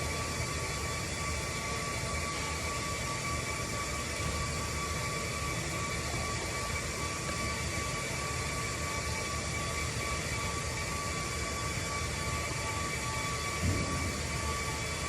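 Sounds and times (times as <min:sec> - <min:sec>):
low mechanical drone: 0:00.0 - 0:15.0
high whining tones: 0:12.8 - 0:15.0.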